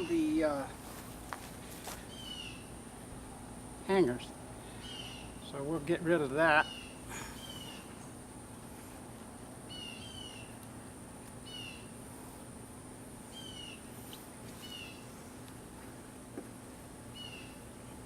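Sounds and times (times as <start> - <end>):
honeybees humming: 0.0 - 18.0
bird calling: 2.1 - 2.7, 4.6 - 5.4, 6.6 - 8.2, 9.7 - 10.6, 11.4 - 11.9, 13.3 - 15.2, 17.1 - 17.7.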